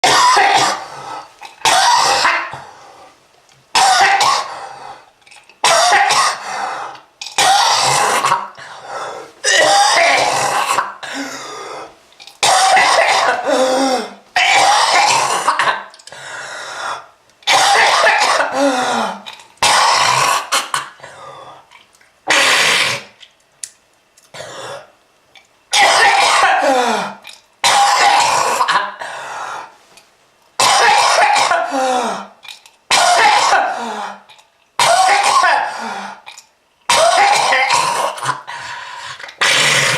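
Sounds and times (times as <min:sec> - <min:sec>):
person clearing throat: 0:00.0 - 0:00.9, 0:01.6 - 0:02.6, 0:03.8 - 0:04.5, 0:05.6 - 0:06.4, 0:09.4 - 0:11.4, 0:12.4 - 0:15.9, 0:17.5 - 0:21.2, 0:25.7 - 0:29.0, 0:30.6 - 0:35.9, 0:36.9 - 0:38.5
person coughing hard: 0:00.0 - 0:00.9, 0:01.6 - 0:02.6, 0:03.7 - 0:04.6, 0:05.6 - 0:06.5, 0:07.4 - 0:08.6, 0:09.4 - 0:11.4, 0:12.4 - 0:15.9, 0:17.5 - 0:21.2, 0:25.7 - 0:29.1, 0:30.6 - 0:32.3, 0:32.9 - 0:36.0, 0:36.9 - 0:38.5.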